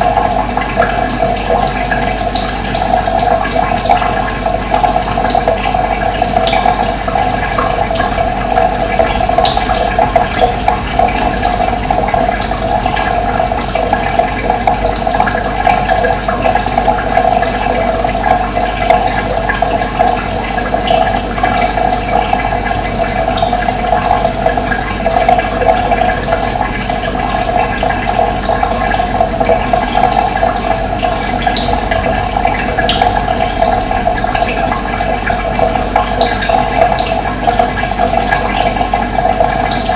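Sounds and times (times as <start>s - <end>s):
running water: 0.0s - 39.9s.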